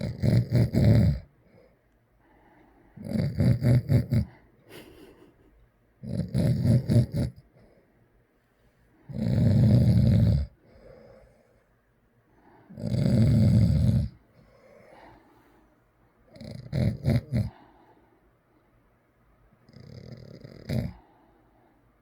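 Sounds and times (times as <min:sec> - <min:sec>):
man snoring heavily: 0:00.0 - 0:01.3, 0:03.0 - 0:04.4, 0:06.0 - 0:07.4, 0:09.1 - 0:11.2, 0:12.7 - 0:14.2, 0:16.4 - 0:17.6, 0:19.7 - 0:21.1.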